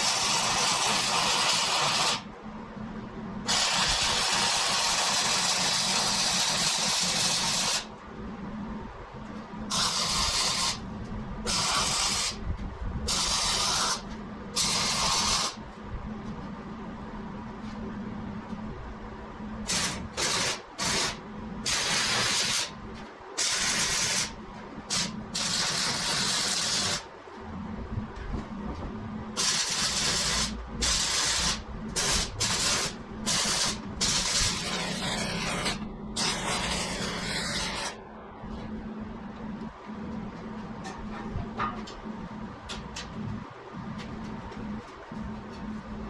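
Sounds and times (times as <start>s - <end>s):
welding arc sizzling: 0.0s - 2.3s, 3.5s - 7.9s, 9.7s - 12.4s, 13.0s - 15.6s, 19.6s - 22.8s, 23.4s - 27.1s, 29.4s - 38.0s.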